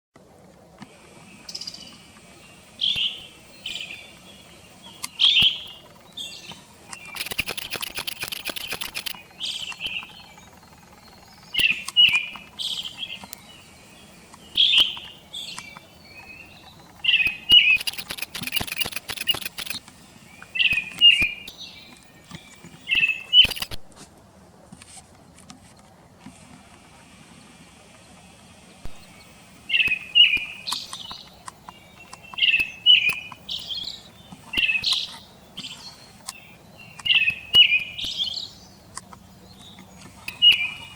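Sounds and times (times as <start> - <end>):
harsh rapid rattling call: 7.0 - 12.8, 16.7 - 19.9, 22.9 - 23.9
thrush whistled song: 16.2 - 19.8, 22.9 - 23.8.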